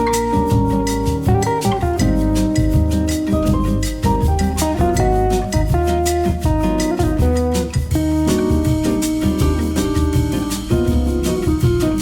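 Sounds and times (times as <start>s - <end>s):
keyboard music with beat: 0.0s - 12.0s.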